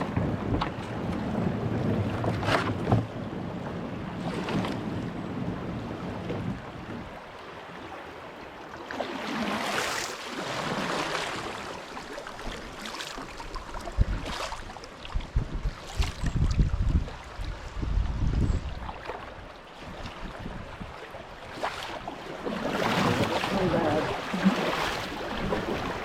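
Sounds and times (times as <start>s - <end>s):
wind buffeting microphone: 0.0s - 7.2s, 13.6s - 19.0s, 19.8s - 21.0s
water swishing: 0.0s - 26.0s.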